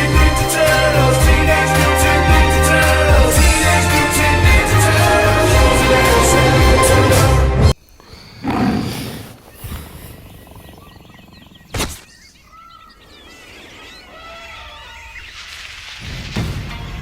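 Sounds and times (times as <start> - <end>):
birds chirping: 2.7 - 15.9.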